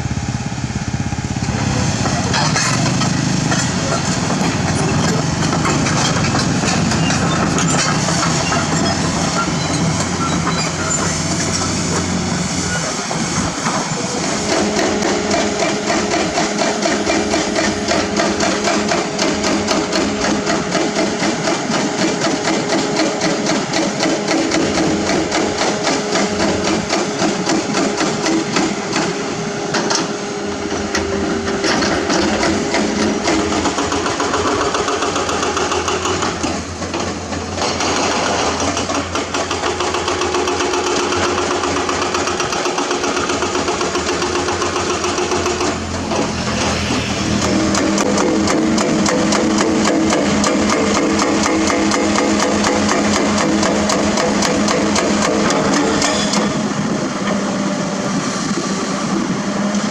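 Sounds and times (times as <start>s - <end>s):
diesel engine running: 0.0s - 59.9s
hydraulic rock breaker hammering: 1.0s - 59.9s.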